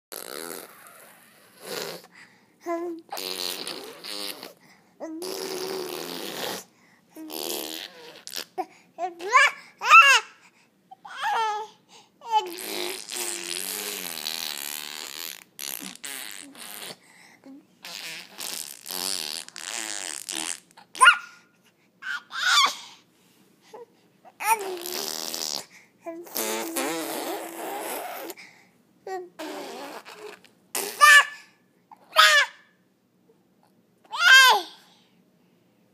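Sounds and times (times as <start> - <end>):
baby vocalizing: 2.7 - 10.4, 11.0 - 21.4, 23.8 - 28.4
baby high squeals: 21.0 - 21.4, 22.0 - 22.9, 29.4 - 31.4, 32.1 - 32.6, 34.1 - 34.7.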